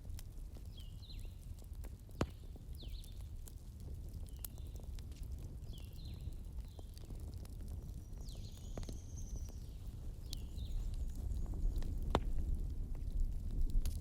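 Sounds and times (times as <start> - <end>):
wood fire crackling and popping: 0.0 - 14.0
small birds chirping: 0.6 - 12.0.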